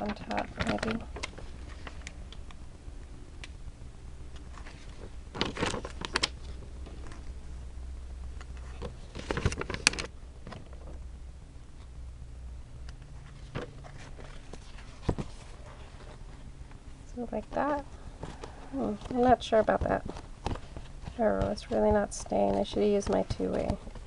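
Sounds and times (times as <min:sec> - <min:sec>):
paper and craft pieces handled: 0:00.0 - 0:02.1, 0:04.4 - 0:07.3, 0:08.4 - 0:10.9, 0:13.2 - 0:24.0
steady low hum: 0:00.0 - 0:24.0.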